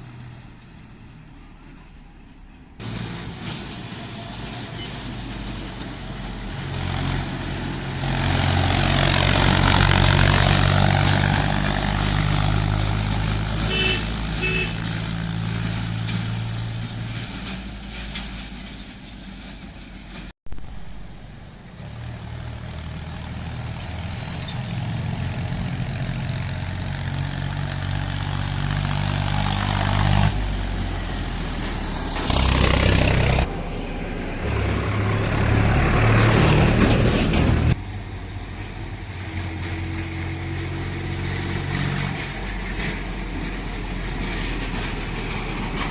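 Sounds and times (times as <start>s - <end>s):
tractor diesel engine hum: 0.0s - 45.9s
traffic noise: 0.0s - 45.9s
horn toots: 13.6s - 15.0s.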